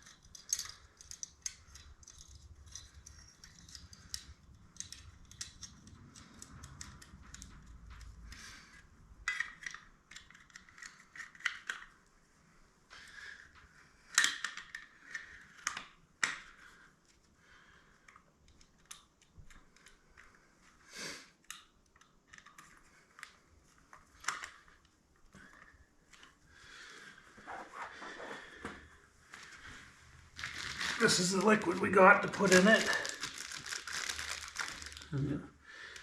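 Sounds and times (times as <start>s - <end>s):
tools and parts clicking and knocking: 0.0s - 12.0s, 14.1s - 16.5s, 21.4s - 23.3s.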